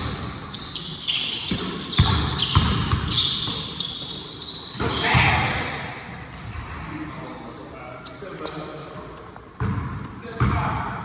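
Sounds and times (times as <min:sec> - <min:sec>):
high-pitched sneaker squeaks: 0:00.0 - 0:05.6, 0:07.2 - 0:09.1
basketball bouncing on gym floor: 0:01.5 - 0:04.1, 0:09.6 - 0:11.0.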